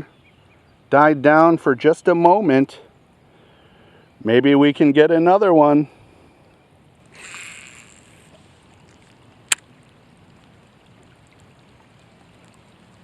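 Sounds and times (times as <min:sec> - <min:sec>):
fishing line hissing out: 0:07.0 - 0:09.6
fishing reel sharp click: 0:07.1 - 0:08.3
light rain patter: 0:08.0 - 0:13.0.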